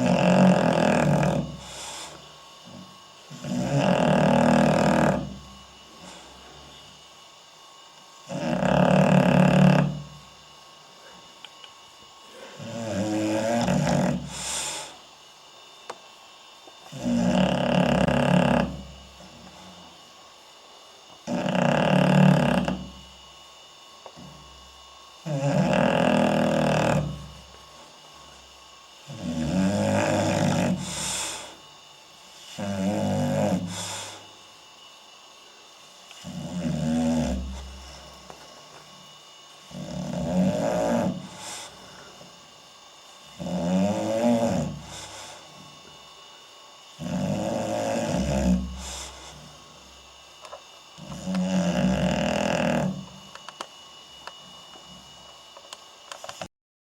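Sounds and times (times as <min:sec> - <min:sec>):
dog snoring: 0:00.0 - 0:07.0, 0:08.2 - 0:10.4, 0:12.3 - 0:15.0, 0:16.8 - 0:20.0, 0:21.2 - 0:23.2, 0:24.2 - 0:28.4, 0:29.0 - 0:31.7, 0:32.3 - 0:34.4, 0:36.1 - 0:45.9, 0:47.0 - 0:53.4
short hissing breath: 0:01.5 - 0:02.8, 0:14.2 - 0:15.1, 0:30.4 - 0:31.7, 0:33.5 - 0:34.4, 0:40.8 - 0:42.4, 0:44.6 - 0:45.8, 0:48.6 - 0:49.9.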